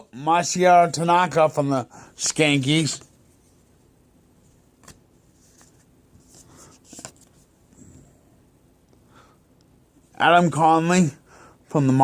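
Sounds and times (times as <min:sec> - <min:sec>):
trading cards clicking and scraping: 0:04.8 - 0:07.4.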